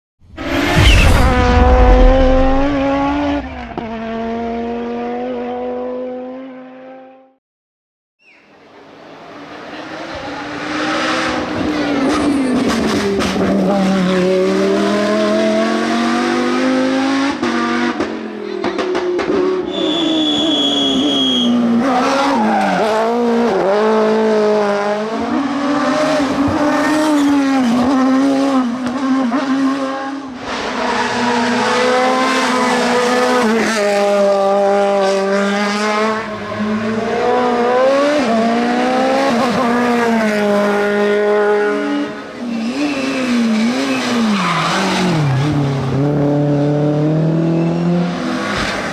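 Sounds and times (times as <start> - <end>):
high-pitched squeal: 0.3 - 4.0
race car engines revving: 1.8 - 7.3, 8.6 - 48.9.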